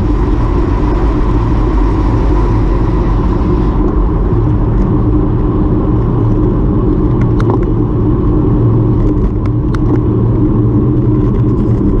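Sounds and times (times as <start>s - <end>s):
moving vehicle rumble: 0.0s - 12.0s.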